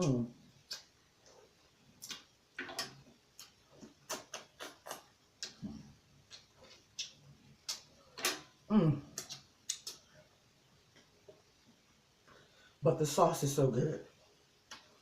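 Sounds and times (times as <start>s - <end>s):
chewing and lip smacks: 0.6s - 8.4s, 9.1s - 10.1s
person humming: 8.7s - 9.2s.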